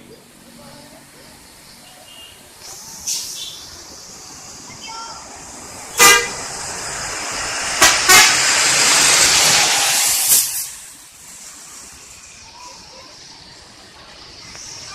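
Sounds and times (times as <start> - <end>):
bus passing by: 0.0 - 14.9
bus horn toots: 6.0 - 6.4, 7.8 - 8.6.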